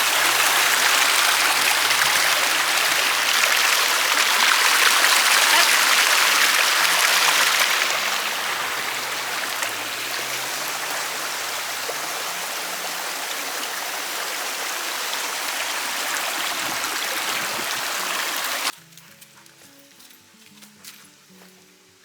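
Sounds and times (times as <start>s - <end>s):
creek water rushing: 0.0s - 18.7s
faint music: 18.7s - 22.0s.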